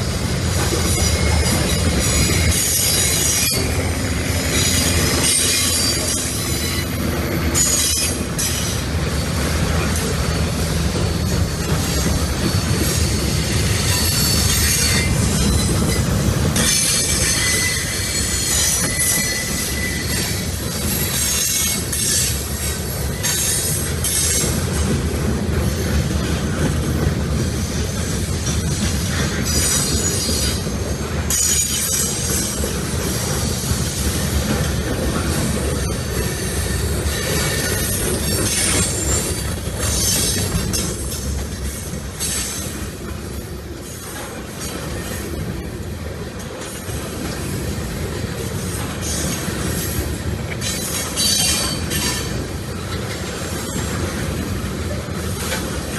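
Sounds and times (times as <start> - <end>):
train wheels rumbling on rail: 0.0 - 55.9
high-pitched wheel squeal: 0.9 - 7.0, 16.6 - 22.4.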